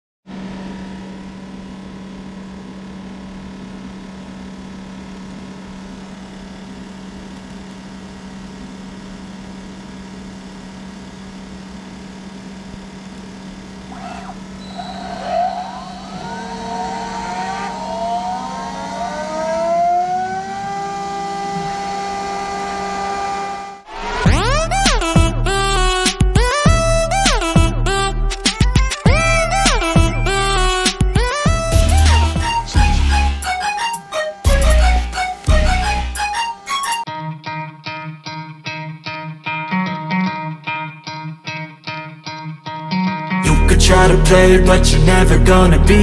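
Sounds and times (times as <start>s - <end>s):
cnc router motors whining: 12.3s - 23.9s, 31.4s - 37.1s.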